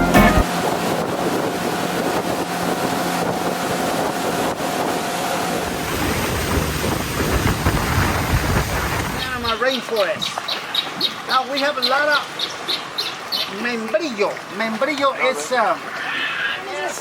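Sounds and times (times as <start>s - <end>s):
wind and water rushing: 0.0s - 17.0s.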